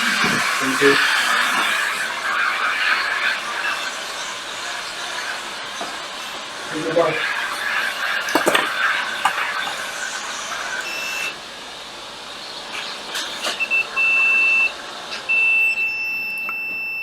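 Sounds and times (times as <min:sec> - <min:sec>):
multimeter continuity beeps: 0:10.8 - 0:11.3, 0:13.5 - 0:17.0.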